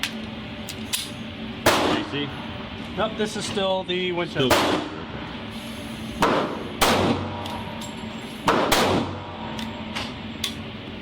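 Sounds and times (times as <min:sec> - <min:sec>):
pistol shots: 0:01.6 - 0:02.1, 0:04.5 - 0:05.0, 0:06.2 - 0:07.5, 0:08.4 - 0:09.3.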